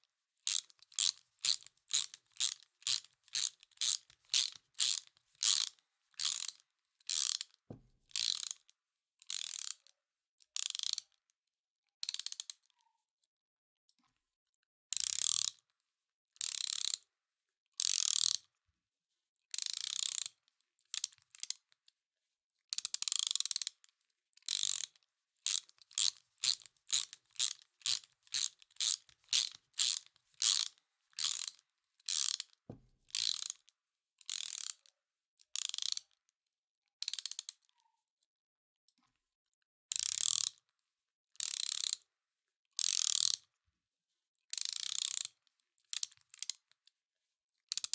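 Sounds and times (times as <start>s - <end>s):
ratchet wrench clicking: 0.5s - 7.5s, 8.2s - 8.6s, 9.3s - 9.8s, 10.6s - 11.0s, 15.0s - 15.5s, 16.5s - 17.0s, 17.8s - 18.4s, 19.6s - 20.3s, 22.8s - 23.7s, 24.5s - 24.9s, 25.5s - 32.5s, 33.1s - 33.6s, 34.3s - 34.8s, 35.6s - 36.0s, 40.0s - 40.6s, 41.4s - 42.0s, 42.8s - 43.4s, 44.6s - 45.3s.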